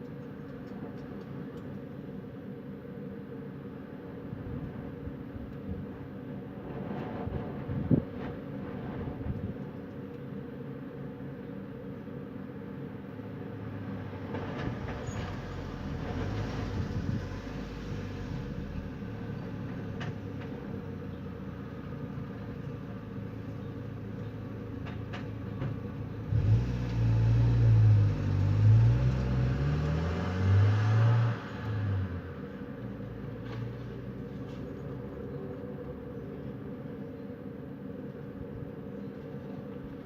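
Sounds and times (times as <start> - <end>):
steady wind: 0.0 - 40.0
vehicle engine accelerating: 14.0 - 19.8, 26.2 - 34.6.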